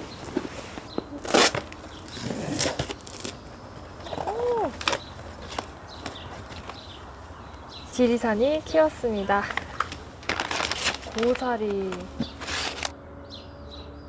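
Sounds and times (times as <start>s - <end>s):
handling rustling: 0.0s - 12.9s
short voiced hum: 4.0s - 4.9s.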